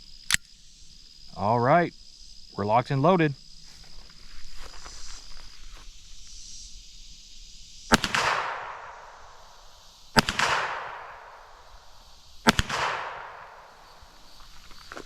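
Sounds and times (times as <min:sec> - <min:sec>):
pistol shots with echo: 0:07.9 - 0:09.6, 0:10.2 - 0:14.2.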